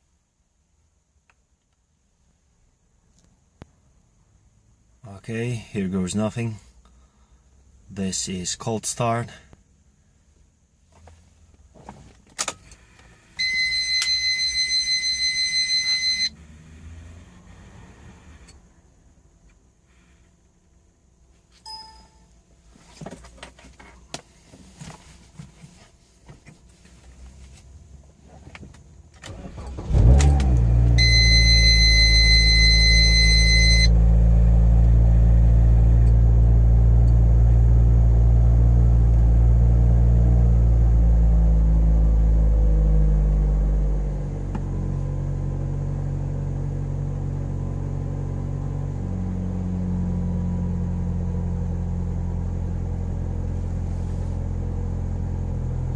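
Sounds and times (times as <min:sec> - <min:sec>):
car engine starting: 0:11.0 - 0:20.8, 0:26.4 - 0:55.9
high steady tone: 0:21.7 - 0:22.4.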